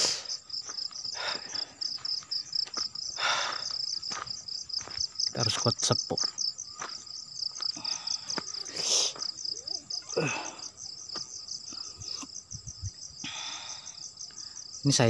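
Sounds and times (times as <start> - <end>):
crickets chirping: 0.0 - 15.0.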